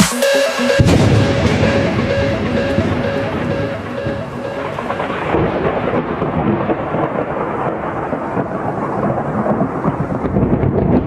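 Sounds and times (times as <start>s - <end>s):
rumbling thunder: 5.0s - 11.0s
rain: 5.2s - 11.0s.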